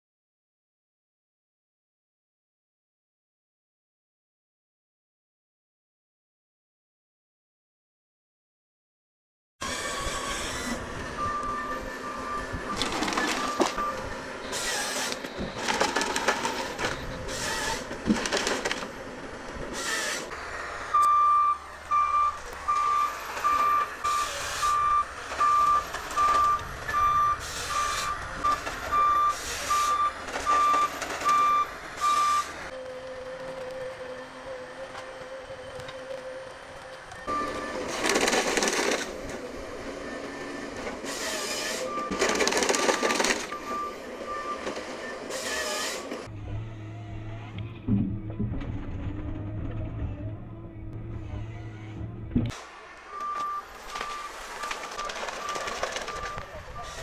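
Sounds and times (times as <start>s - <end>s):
reversing alarm beeping: 9.6s - 15.7s, 20.9s - 32.6s, 37.2s - 37.9s, 39.9s - 46.0s, 53.1s - 56.9s
heavy machinery clanking: 40.8s - 46.3s, 53.2s - 57.0s.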